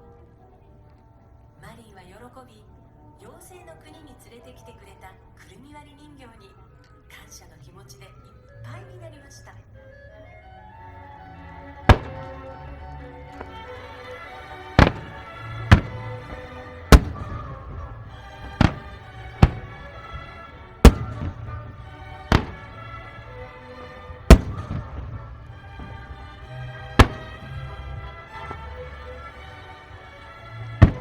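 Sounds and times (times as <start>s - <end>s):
music playing: 0.0s - 31.0s
fireworks bursting: 11.6s - 31.0s.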